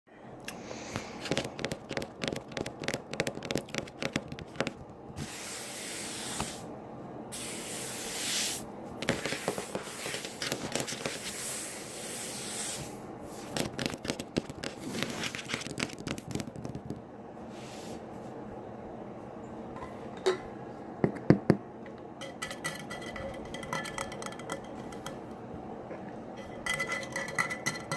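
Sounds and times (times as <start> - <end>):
hissing spray-like bursts: 5.2 - 6.7, 7.3 - 10.4, 11.2 - 13.0.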